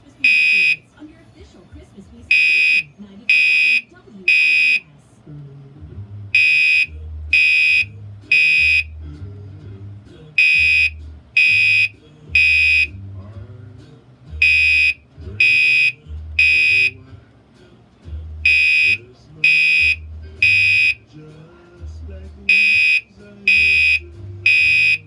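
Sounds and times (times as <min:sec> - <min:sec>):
fire alarm horn blasts: 0:00.2 - 0:00.9, 0:02.3 - 0:04.9, 0:06.3 - 0:09.0, 0:10.4 - 0:13.0, 0:14.4 - 0:17.0, 0:18.4 - 0:21.1, 0:22.5 - 0:25.0.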